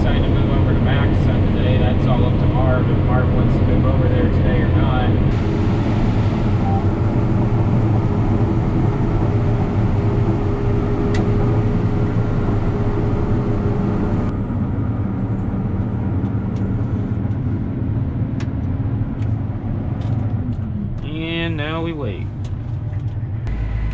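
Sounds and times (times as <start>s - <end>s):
faint machine whine: 0.0s - 17.2s
combine harvester engine drone: 0.0s - 23.9s.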